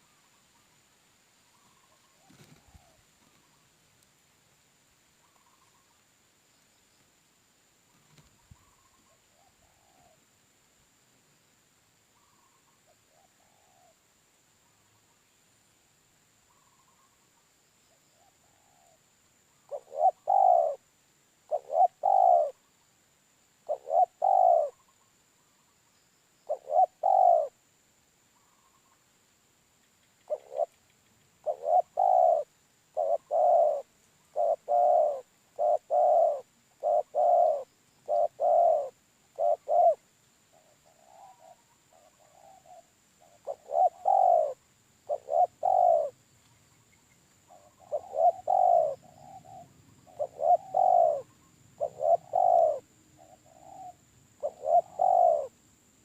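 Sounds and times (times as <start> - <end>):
dove cooing: 1.5 - 3.7, 8.0 - 10.2, 12.2 - 14.0, 19.7 - 20.8, 21.5 - 22.6, 23.6 - 25.0, 26.5 - 27.6, 30.2 - 30.8, 31.4 - 46.2, 47.5 - 55.6.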